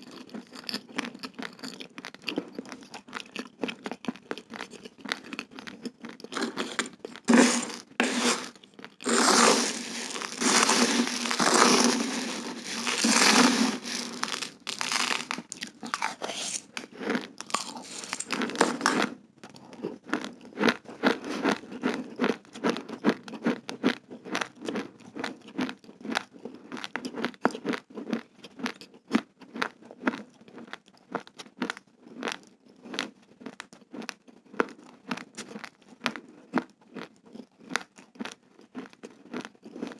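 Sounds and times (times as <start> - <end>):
chewing crunchy rice grains: 0.0 - 19.1.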